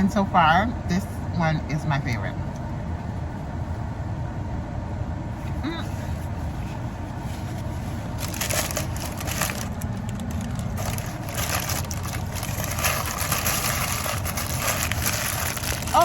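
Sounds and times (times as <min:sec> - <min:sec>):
steady low rumble: 0:00.0 - 0:16.0
chewing and crunching food: 0:08.2 - 0:16.0.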